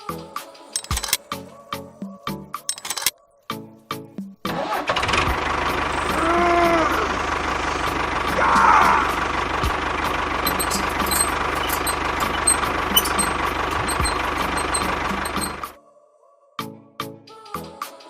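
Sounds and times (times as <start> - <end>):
small motor running: 10.5 - 15.7.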